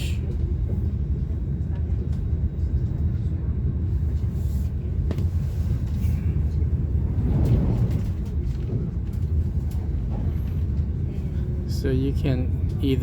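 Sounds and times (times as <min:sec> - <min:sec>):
train rumbling: 0:00.0 - 0:13.0.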